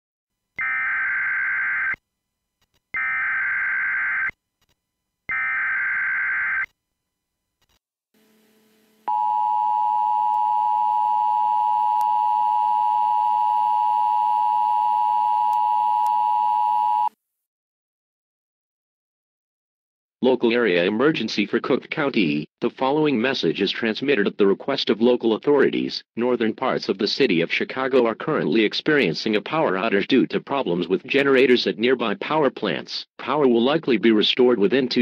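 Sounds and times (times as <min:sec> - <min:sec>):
two-tone attention signal: 0:09.1 - 0:17.1.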